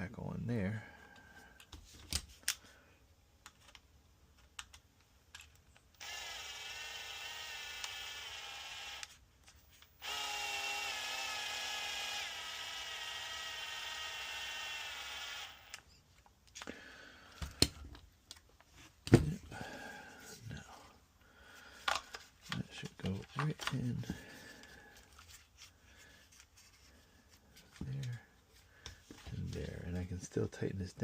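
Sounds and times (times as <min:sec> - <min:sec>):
power drill driving screw: 0:06.0 - 0:15.9.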